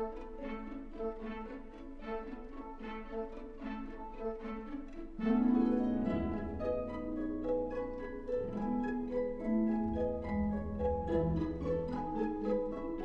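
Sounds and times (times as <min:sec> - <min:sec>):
held string tones: 0:05.3 - 0:13.0
plucked string notes: 0:05.3 - 0:13.0.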